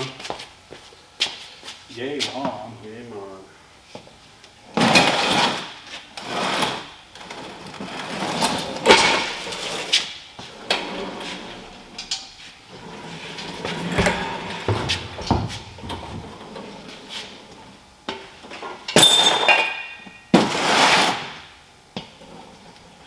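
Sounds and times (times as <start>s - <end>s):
metal tools clanking and scraping: 13.2s - 16.5s.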